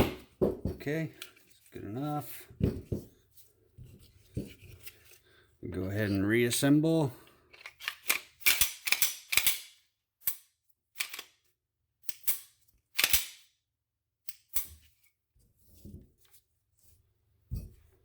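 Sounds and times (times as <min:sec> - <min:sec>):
pistol parts clicking together: 0:07.5 - 0:11.4, 0:12.0 - 0:13.5, 0:14.3 - 0:14.8.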